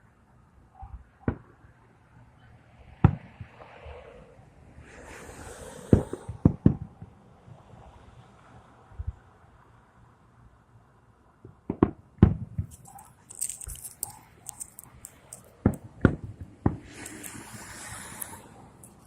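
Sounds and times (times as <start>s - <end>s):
hissing crackle: 12.6s - 15.8s, 16.8s - 19.0s
firework crackle: 12.6s - 19.0s.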